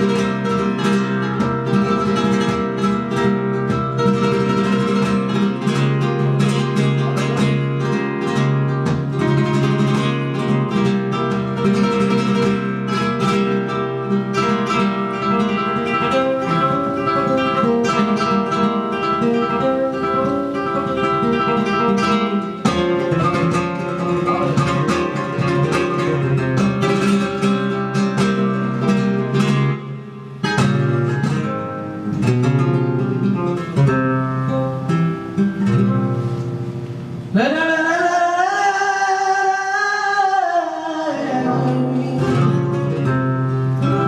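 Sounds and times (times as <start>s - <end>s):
flamenco guitar playing: 0.0s - 44.0s.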